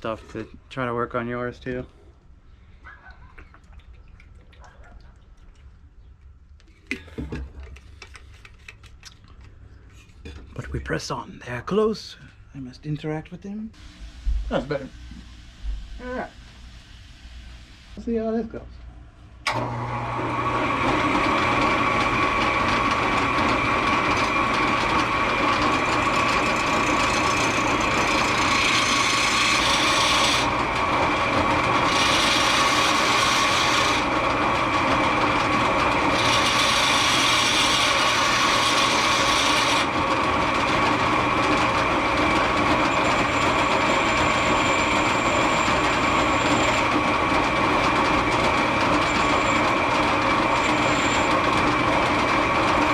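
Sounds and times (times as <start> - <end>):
small electric motor whining: 19.5 - 52.9.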